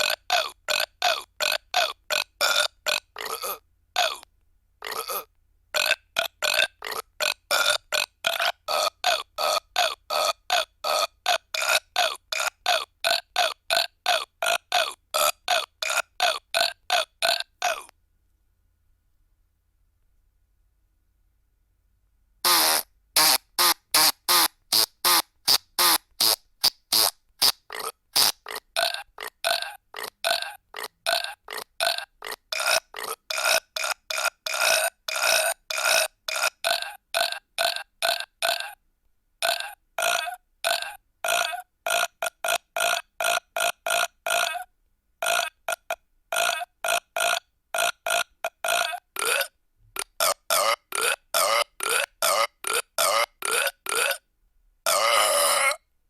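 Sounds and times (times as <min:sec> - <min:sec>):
burp sound effects: 0:00.0 - 0:17.9, 0:22.5 - 0:34.3, 0:36.3 - 0:38.8, 0:39.4 - 0:42.1, 0:48.7 - 0:54.2, 0:54.9 - 0:55.8.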